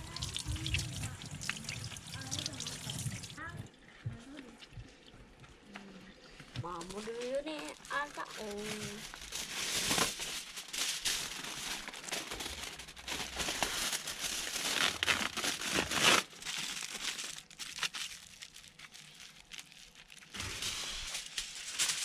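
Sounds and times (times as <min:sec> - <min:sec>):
crinkly wrapping crackling and tearing: 0:06.7 - 0:22.0.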